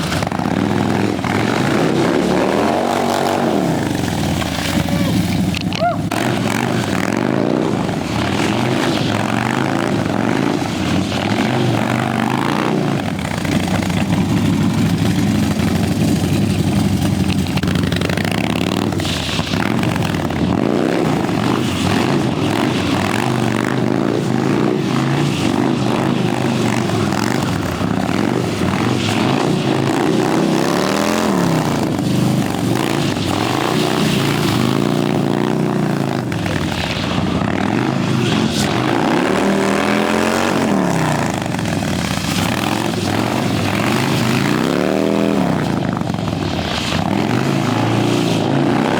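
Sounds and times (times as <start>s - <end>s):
motorcycle engine revving: 0.0s - 48.9s.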